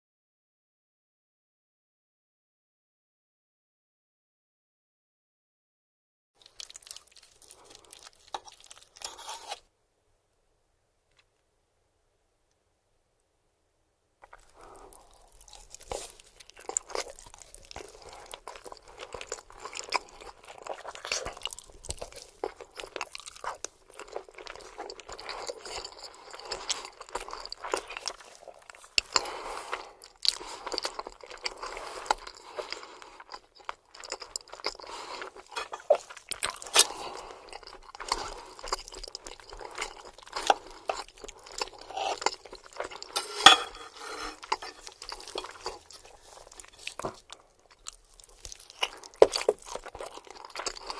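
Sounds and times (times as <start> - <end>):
close chewing: 6.4 - 9.6, 14.2 - 50.9.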